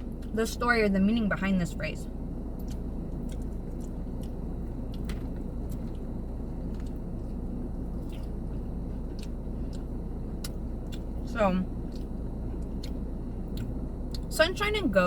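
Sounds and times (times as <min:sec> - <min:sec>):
low hum: 0:00.0 - 0:15.0
person chewing: 0:02.5 - 0:14.3.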